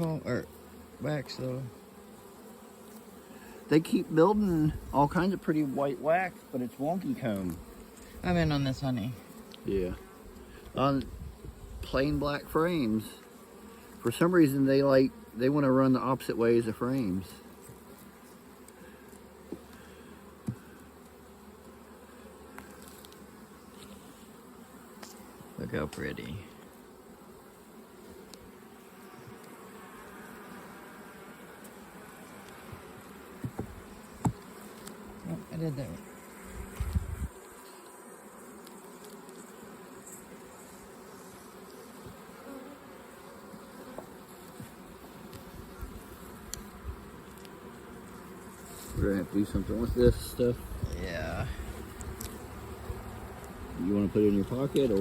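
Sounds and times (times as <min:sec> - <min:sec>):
honeybees buzzing: 0:00.0 - 0:55.0.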